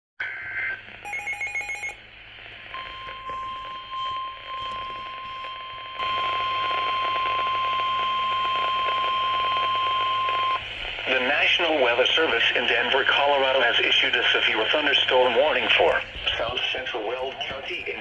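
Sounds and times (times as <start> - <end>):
radio hiss: 0.2 - 1.0, 2.0 - 18.0
steady alarm tone: 2.7 - 12.9.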